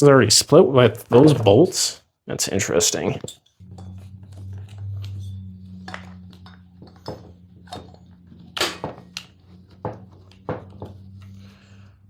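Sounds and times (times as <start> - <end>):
steady low hum: 0.8 - 12.0
engine parts knocking and clicking: 3.1 - 12.0.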